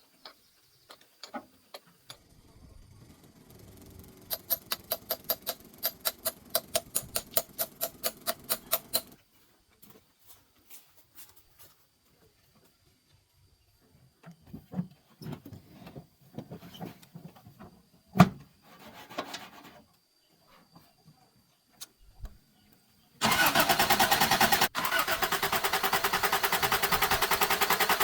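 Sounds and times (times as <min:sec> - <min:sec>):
mechanical rumble with clicks: 0:02.1 - 0:09.2.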